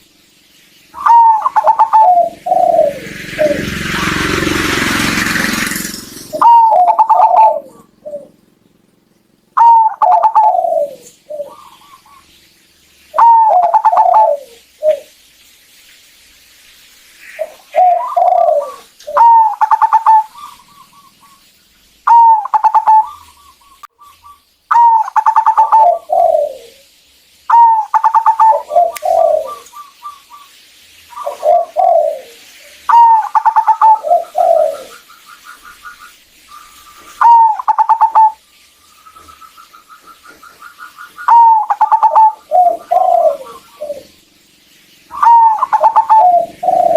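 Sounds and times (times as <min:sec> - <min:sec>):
doves cooing: 0:01.0 - 0:12.4, 0:13.1 - 0:15.1, 0:17.3 - 0:26.9, 0:27.5 - 0:30.5, 0:31.1 - 0:38.4, 0:39.1 - 0:44.3, 0:45.1 - 0:46.9.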